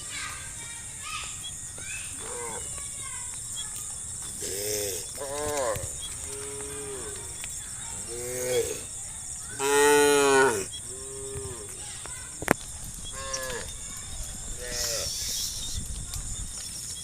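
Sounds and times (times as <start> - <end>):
cows mooing: 4.3 - 7.4, 8.0 - 9.0, 9.6 - 11.8, 13.1 - 13.8, 14.6 - 15.2.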